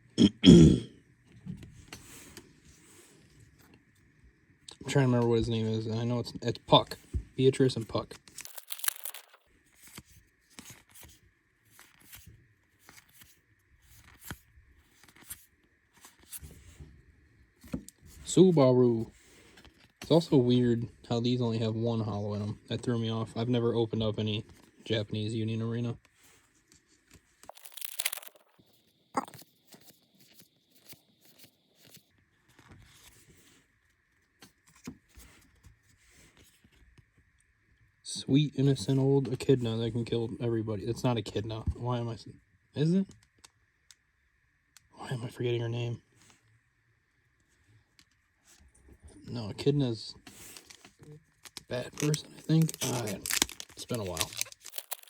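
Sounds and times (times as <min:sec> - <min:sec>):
papery card rustle: 0:08.3 - 0:16.8, 0:27.1 - 0:33.4, 0:50.3 - 0:55.0
trading cards sliding: 0:08.4 - 0:10.0, 0:27.4 - 0:28.6, 0:50.3 - 0:55.0.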